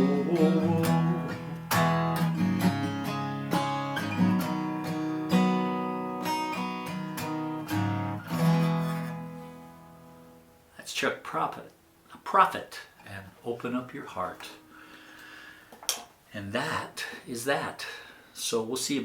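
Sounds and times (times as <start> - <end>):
acoustic guitar chords: 0.0 - 10.6.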